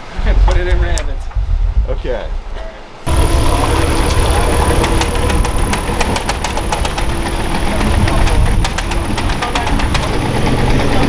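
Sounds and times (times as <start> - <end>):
heavy machinery engine running: 3.1 - 11.0.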